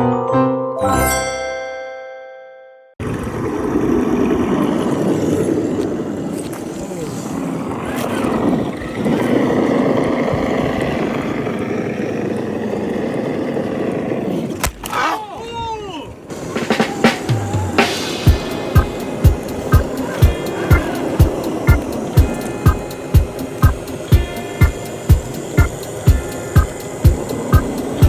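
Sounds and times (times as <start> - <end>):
chiming jingle: 0.0 - 2.9
electric motor and gears whining: 16.3 - 28.0.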